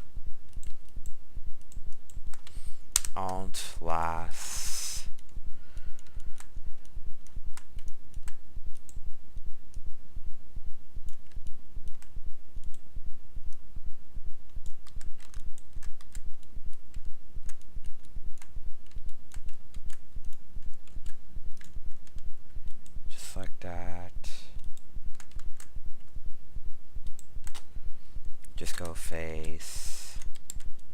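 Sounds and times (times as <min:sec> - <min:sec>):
loud pulsing low hum: 0:00.0 - 0:30.9
computer keyboard tapping: 0:00.5 - 0:03.5, 0:11.0 - 0:12.8, 0:14.5 - 0:23.0, 0:24.6 - 0:26.2, 0:27.0 - 0:27.7, 0:28.4 - 0:29.6.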